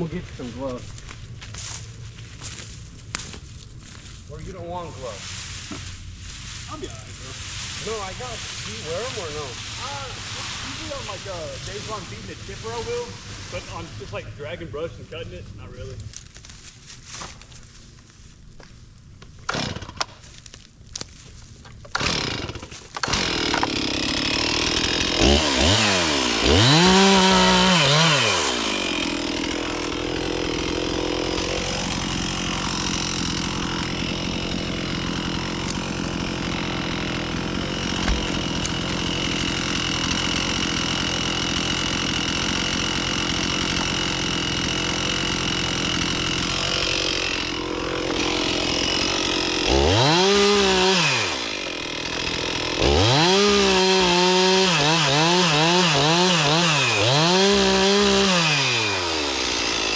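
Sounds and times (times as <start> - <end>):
chainsaw starting and running: 7.8 - 14.2, 19.5 - 20.1, 21.9 - 59.9.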